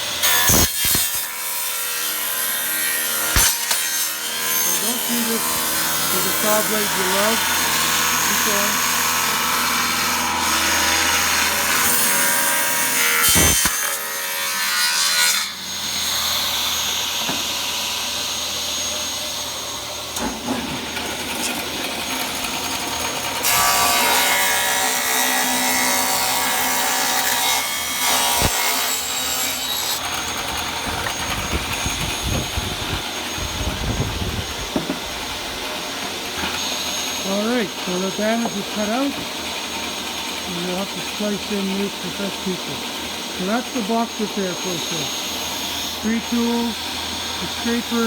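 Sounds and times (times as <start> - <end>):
table saw cutting wood: 0.0 - 48.0
sharp knocks: 34.7 - 35.0.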